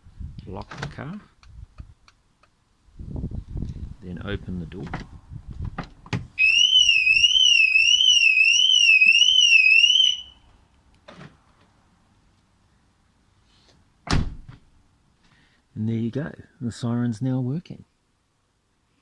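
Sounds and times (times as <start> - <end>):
car alarm siren warbling: 6.4 - 10.4.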